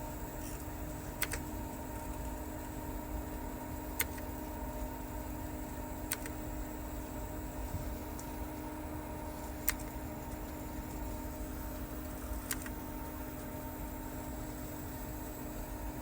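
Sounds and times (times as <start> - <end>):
steady electrical hum: 0.0 - 16.0
sharp clicks: 1.2 - 1.4, 4.0 - 4.3, 6.1 - 6.4, 9.6 - 10.0, 12.4 - 12.8.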